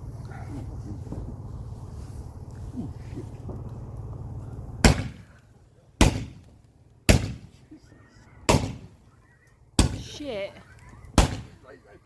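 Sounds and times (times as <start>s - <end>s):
low steady rumble: 0.0s - 12.0s
fireworks bangs: 4.8s - 5.3s, 6.0s - 6.5s, 7.1s - 7.6s, 8.5s - 9.0s, 11.1s - 11.7s.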